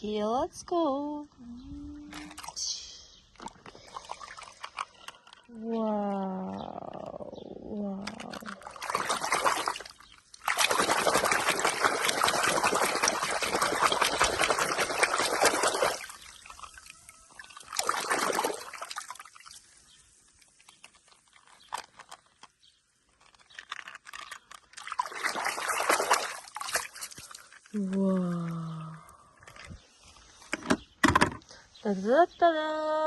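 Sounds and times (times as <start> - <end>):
water running: 8.2 - 19.8.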